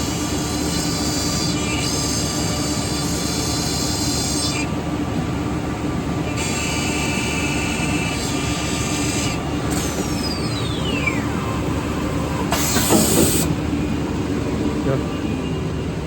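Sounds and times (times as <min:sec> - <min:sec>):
drilling machine hum: 0:00.0 - 0:16.0
high-pitched machine whine: 0:06.2 - 0:16.0.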